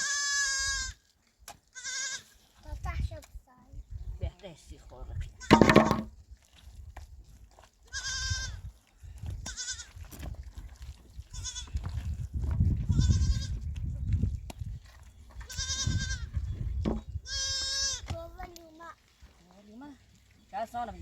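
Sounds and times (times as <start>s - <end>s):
goats bleating: 0.0s - 1.0s, 1.8s - 2.3s, 7.9s - 8.6s, 9.4s - 10.0s, 11.3s - 11.8s, 15.5s - 16.3s.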